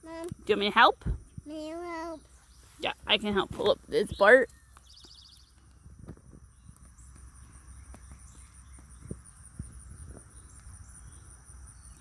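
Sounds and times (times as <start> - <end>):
insects trilling: 0.0 - 12.0.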